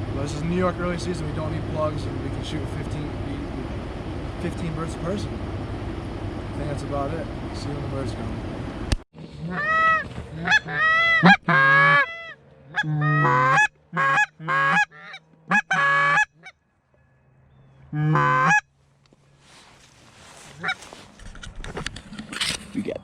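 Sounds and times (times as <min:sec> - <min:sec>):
goose honking: 0:09.3 - 0:16.6, 0:17.8 - 0:18.7, 0:20.2 - 0:21.1.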